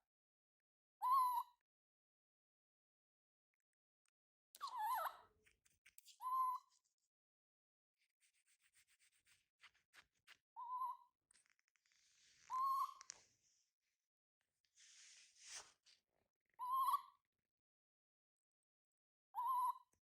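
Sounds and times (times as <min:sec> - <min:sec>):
baby monkey crying: 0:16.6 - 0:17.1.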